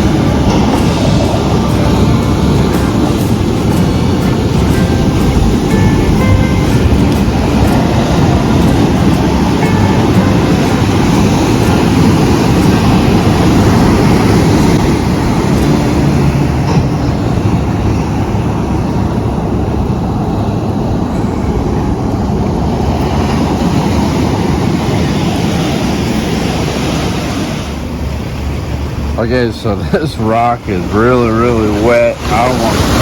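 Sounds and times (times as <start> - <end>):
ocean surf crashing against rocks: 0.0 - 33.0.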